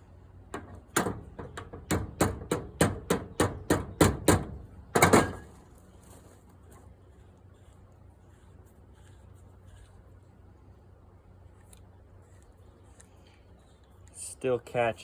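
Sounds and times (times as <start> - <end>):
hammer tapping on metal: 0.6 - 5.4.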